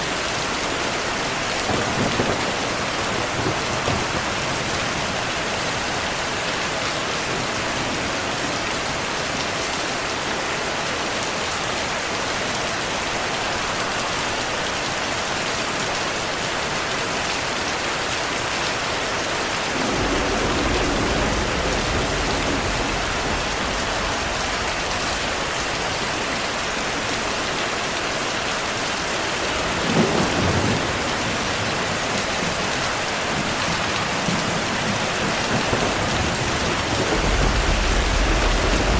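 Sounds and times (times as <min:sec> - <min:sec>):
heavy rain: 0:00.0 - 0:38.9
thunder rumble: 0:19.5 - 0:27.4, 0:29.6 - 0:38.9
thunder clap: 0:19.7 - 0:27.2, 0:33.3 - 0:38.9.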